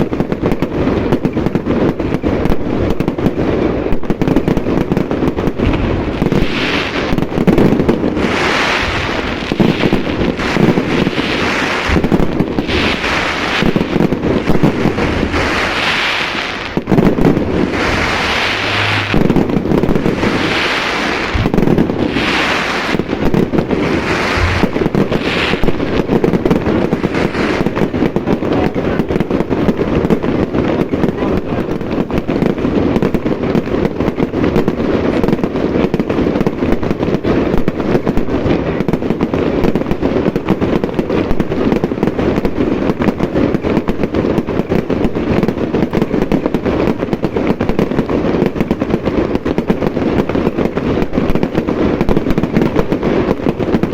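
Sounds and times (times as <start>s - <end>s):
fireworks bangs and crackling: 0.0s - 53.9s
fireworks hissing: 1.1s - 31.8s.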